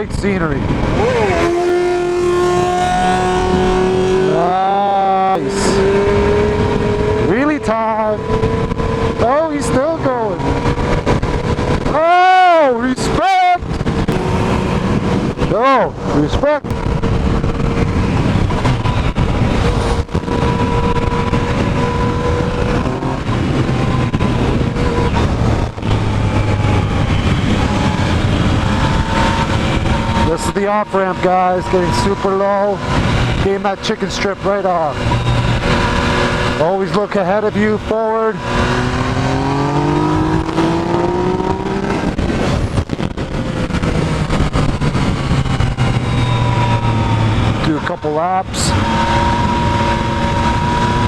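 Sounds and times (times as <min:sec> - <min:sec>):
motorcycle engine running: 0:00.0 - 0:12.9, 0:13.6 - 0:51.0
road and wind rush: 0:00.0 - 0:51.0.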